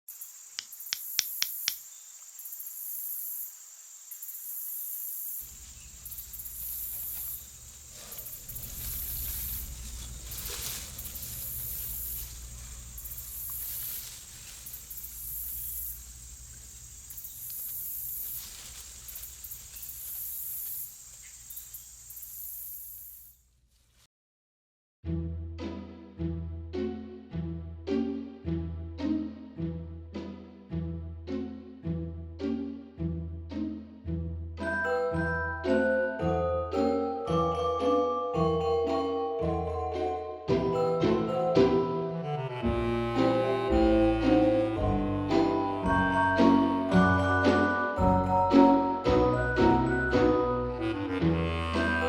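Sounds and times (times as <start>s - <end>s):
pulsing high hiss: 5.4s - 23.0s
low hum: 5.5s - 16.9s.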